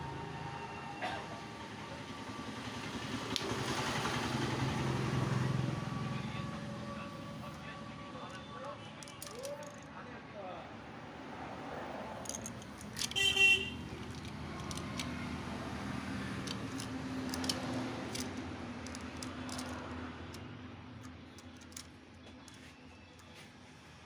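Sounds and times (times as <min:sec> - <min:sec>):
motorcycle engine humming: 0:12.1 - 0:23.4
horn toot: 0:13.1 - 0:13.8
sharp clicks: 0:16.4 - 0:23.3.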